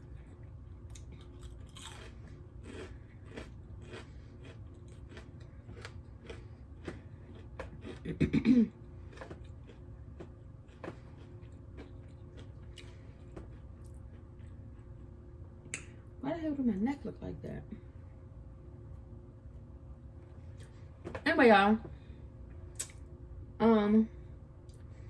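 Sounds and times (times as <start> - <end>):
chewing crunches: 0.1 - 8.2, 8.9 - 15.2
person clearing throat: 8.0 - 8.8.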